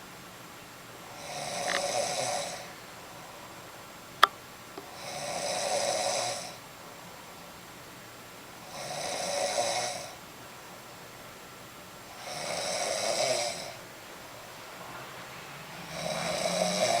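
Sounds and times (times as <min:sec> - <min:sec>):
woman snoring loudly: 0:01.1 - 0:02.7, 0:04.9 - 0:06.6, 0:08.7 - 0:10.2, 0:12.2 - 0:13.8, 0:15.8 - 0:17.0.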